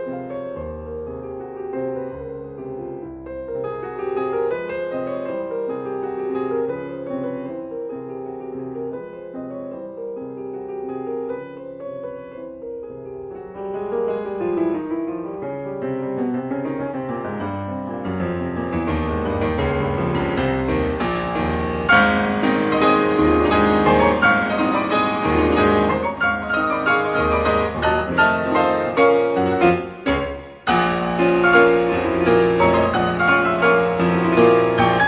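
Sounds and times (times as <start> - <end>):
piano music: 0.0 - 35.0.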